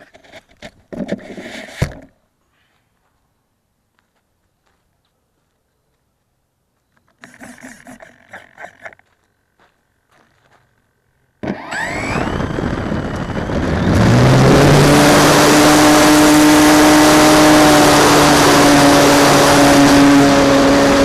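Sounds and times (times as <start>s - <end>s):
model plane motor whining: 11.4s - 14.9s
wind noise on microphone: 11.6s - 16.0s.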